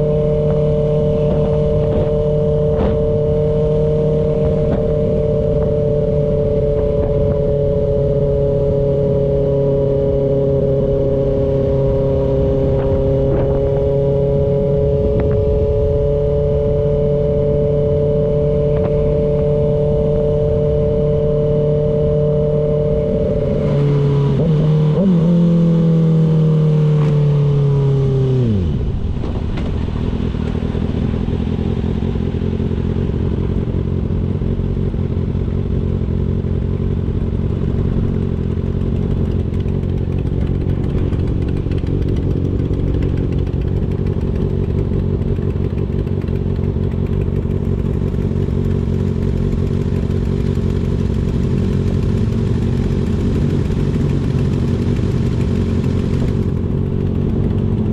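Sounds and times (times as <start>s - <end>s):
motorcycle engine revs falling: 0.0s - 9.1s.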